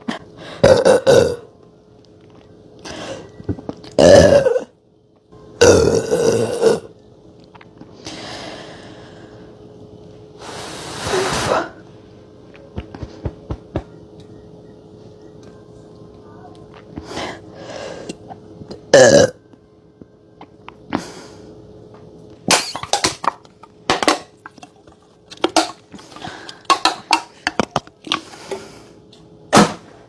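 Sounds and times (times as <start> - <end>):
woman burping: 0.6 - 1.5, 4.0 - 4.7, 5.6 - 6.9, 18.9 - 19.4
breathy hissing sounds: 10.4 - 11.8.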